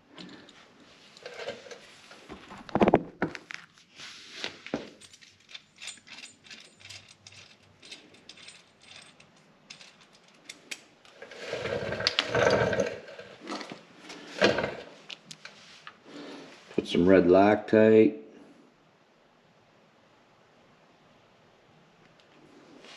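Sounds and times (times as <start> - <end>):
metal parts clicking and rattling: 0.1 - 1.8, 4.6 - 14.9.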